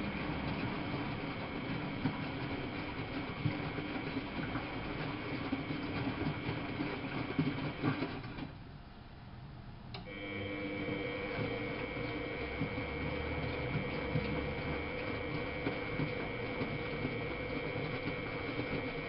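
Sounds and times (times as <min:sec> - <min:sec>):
washing machine humming: 0:00.0 - 0:19.0.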